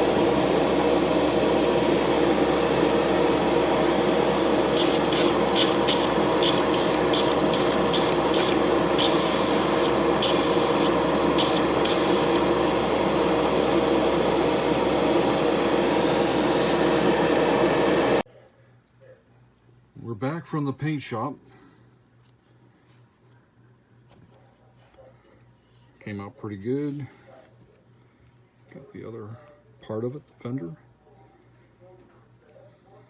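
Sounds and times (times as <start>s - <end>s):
steady machine hum: 0.0s - 18.3s
spray paint hissing: 4.8s - 12.4s.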